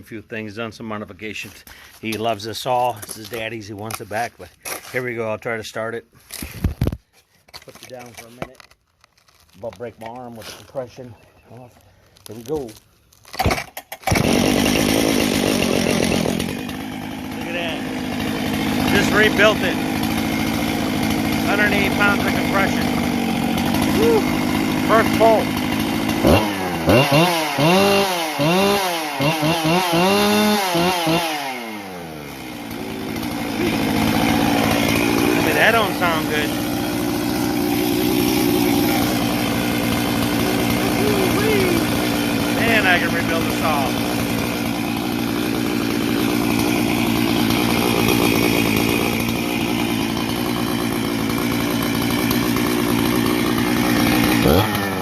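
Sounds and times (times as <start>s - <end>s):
chainsaw revving: 13.4s - 55.0s.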